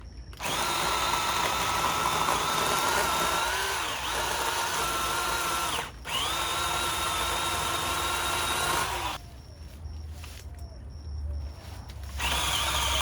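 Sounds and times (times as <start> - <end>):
electric saw cutting wood: 0.4 - 9.2, 12.2 - 13.0.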